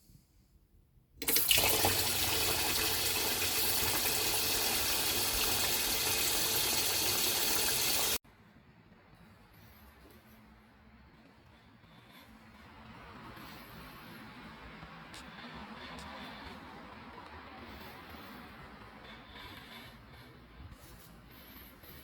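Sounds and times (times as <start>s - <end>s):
water running in a stream: 1.2s - 8.2s.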